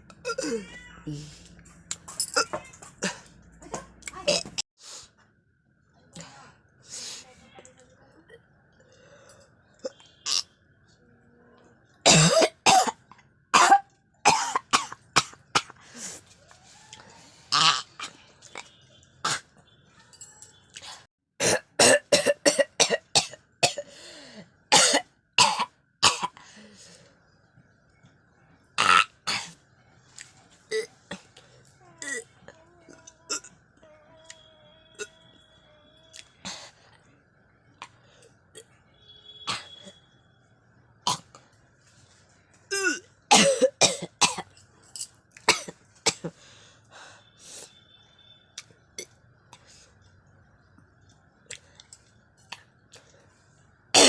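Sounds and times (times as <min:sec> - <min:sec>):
person coughing hard: 0:12.0 - 0:13.0, 0:13.6 - 0:15.8, 0:21.4 - 0:23.9, 0:24.7 - 0:26.4, 0:42.7 - 0:44.5, 0:45.5 - 0:46.4.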